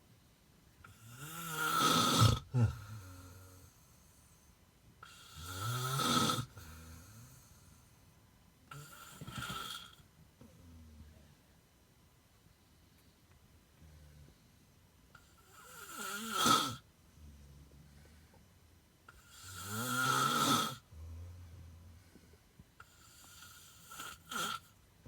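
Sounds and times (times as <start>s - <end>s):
person snoring: 1.0s - 3.6s, 5.0s - 7.3s, 15.5s - 16.8s, 19.2s - 21.4s, 22.8s - 24.7s
soft breathing: 17.0s - 19.3s, 20.8s - 24.7s.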